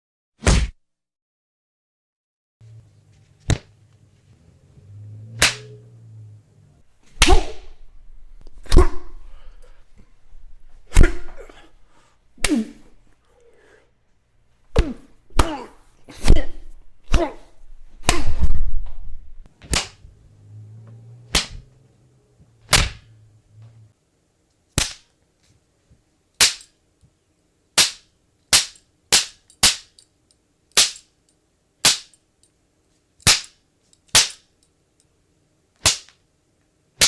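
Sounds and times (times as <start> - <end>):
sharp punch hits: 0.4 - 0.8, 22.7 - 23.0.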